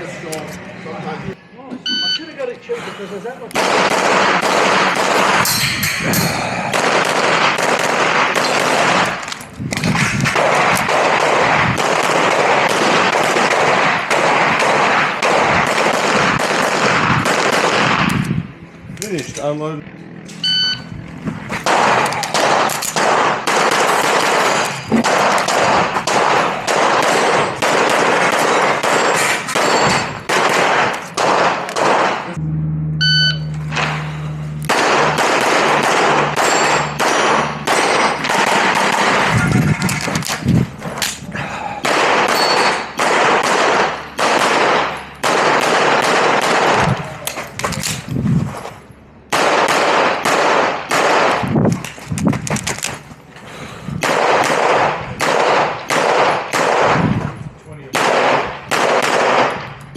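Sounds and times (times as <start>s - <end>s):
shot timer beep: 1.9s - 2.4s, 20.4s - 20.9s, 33.0s - 33.6s
rapid pistol shots: 3.5s - 18.2s, 21.6s - 32.3s, 34.7s - 40.4s, 41.8s - 48.0s, 49.3s - 51.5s, 54.0s - 57.2s, 57.9s - 59.8s.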